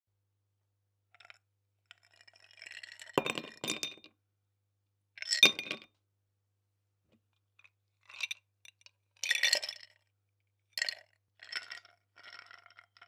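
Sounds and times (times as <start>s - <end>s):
ice cubes clinking in glass: 9.2s - 9.9s.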